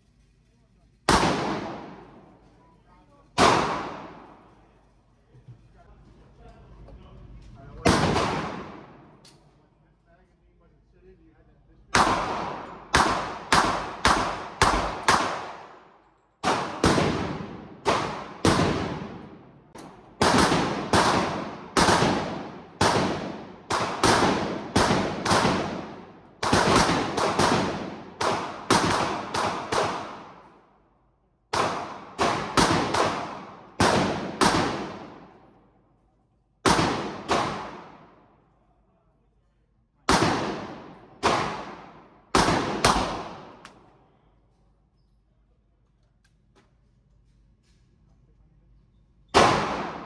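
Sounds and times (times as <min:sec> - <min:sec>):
echoing gunshots: 0:01.1 - 0:02.4, 0:03.4 - 0:04.6, 0:07.8 - 0:09.2, 0:11.9 - 0:30.8, 0:31.5 - 0:35.6, 0:36.6 - 0:38.4, 0:40.1 - 0:43.9, 0:49.4 - 0:50.0.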